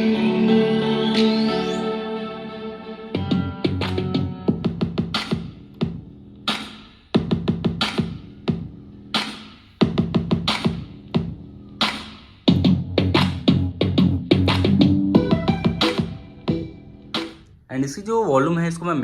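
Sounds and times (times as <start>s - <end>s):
electronic music from speaker: 0.0s - 5.5s, 12.5s - 17.4s.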